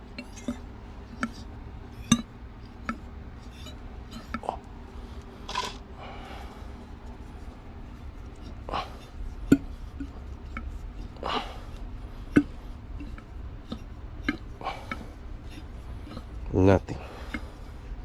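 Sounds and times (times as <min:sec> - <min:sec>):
low steady hum: 0:00.0 - 0:18.0
soft metal scrapes: 0:03.4 - 0:04.4.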